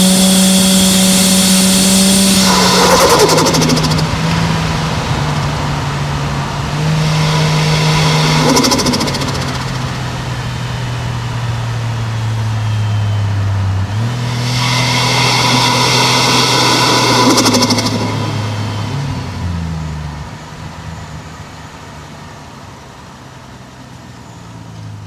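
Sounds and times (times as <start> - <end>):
turbo flutter: 0.0 - 11.2, 14.0 - 20.2
car engine running: 0.0 - 25.0.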